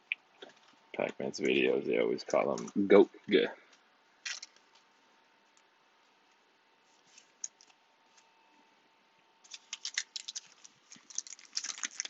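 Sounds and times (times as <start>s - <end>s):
foil wrapper crinkling: 4.2s - 4.7s, 9.4s - 12.0s.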